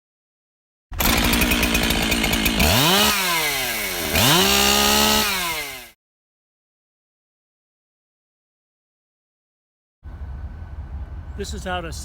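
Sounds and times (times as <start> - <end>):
chainsaw idling and revving: 0.9 - 6.0.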